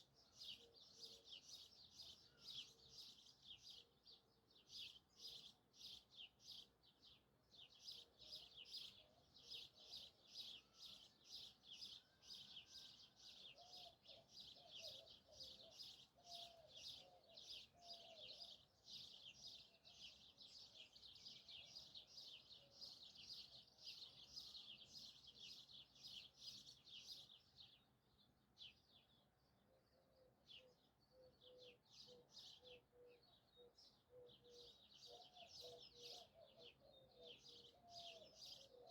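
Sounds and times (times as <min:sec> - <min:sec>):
lower softer bird calls: 0:00.0 - 0:27.8, 0:28.6 - 0:38.9
birds chirping high: 0:30.6 - 0:38.9.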